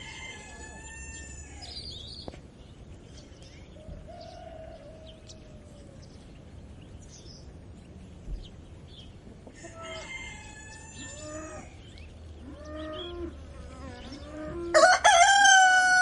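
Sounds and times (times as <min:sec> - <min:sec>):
rooster crowing: 0:00.0 - 0:01.8, 0:04.1 - 0:06.0, 0:09.6 - 0:11.7, 0:14.6 - 0:16.0
small birds chirping: 0:00.0 - 0:14.7.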